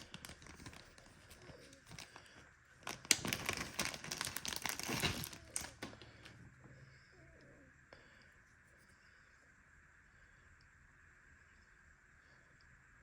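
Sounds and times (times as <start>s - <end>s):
crinkling and rustling: 0.0s - 6.3s.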